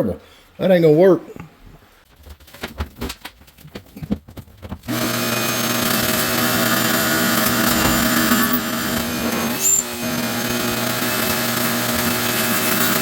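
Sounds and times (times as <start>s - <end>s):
pressure washer running: 4.9s - 13.0s.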